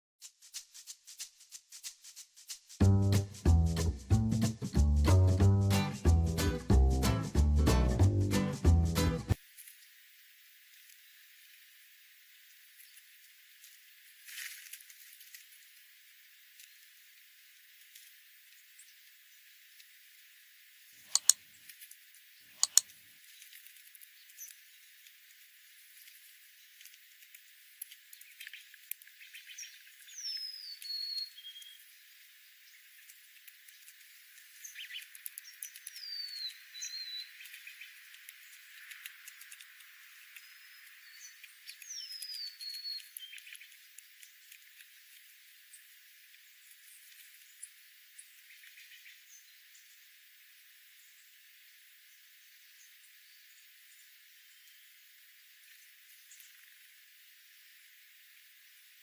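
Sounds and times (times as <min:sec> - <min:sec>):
soft bird chirps: 0:21.0 - 0:25.1, 0:28.0 - 0:50.1
sharp clicks: 0:21.1 - 0:21.4, 0:22.6 - 0:22.9
light ticking: 0:22.6 - 0:22.8.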